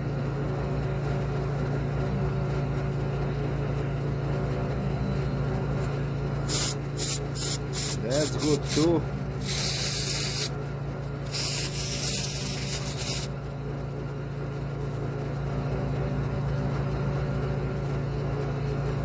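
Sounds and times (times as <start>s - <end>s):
steady low hum: 0.0s - 19.0s
spray can hissing: 6.4s - 10.5s, 11.3s - 13.3s.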